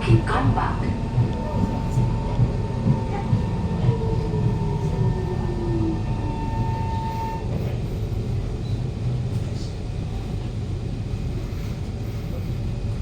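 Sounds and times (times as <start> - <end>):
traction motor whine falling: 0.0 - 7.6
steady high whine: 0.0 - 8.2
train running rumble: 0.0 - 13.0.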